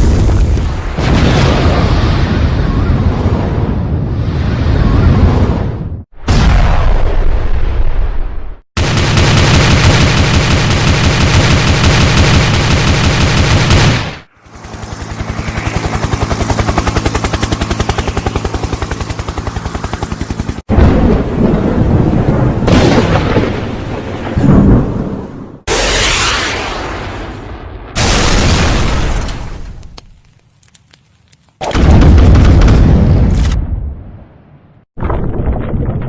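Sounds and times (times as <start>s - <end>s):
explosion: 0.0s - 8.6s, 20.7s - 29.8s, 31.6s - 34.0s
rumbling blasts: 0.0s - 10.2s, 20.7s - 29.8s, 31.8s - 34.3s
rapid machine-gun fire: 8.8s - 14.3s.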